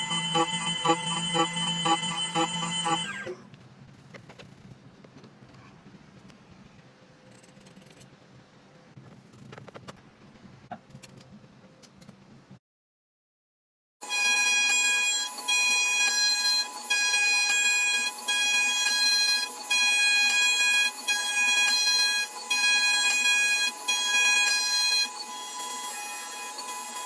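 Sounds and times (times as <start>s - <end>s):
key cutting machine whine: 0.0s - 3.4s, 14.0s - 27.0s.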